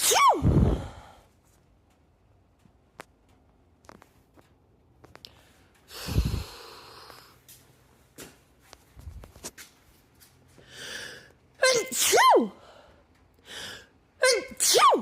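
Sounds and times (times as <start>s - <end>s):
woman sneezing loudly: 0.0s - 0.9s, 11.6s - 12.6s, 14.2s - 15.0s
faint breaths: 5.1s - 8.0s, 10.5s - 11.6s, 12.6s - 14.1s.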